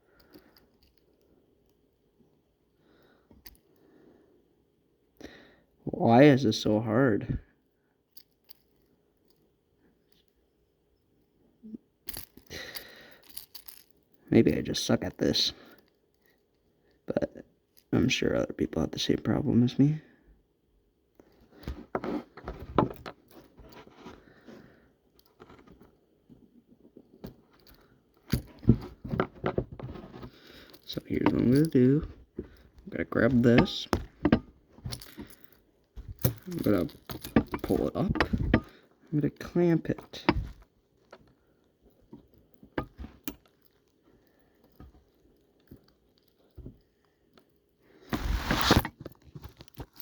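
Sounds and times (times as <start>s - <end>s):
metal clicks and clinks: 33.2s - 38.8s.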